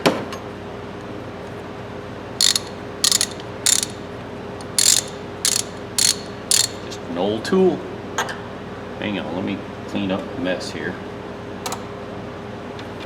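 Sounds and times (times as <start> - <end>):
ratchet clicking: 2.4 - 4.0, 4.6 - 7.0.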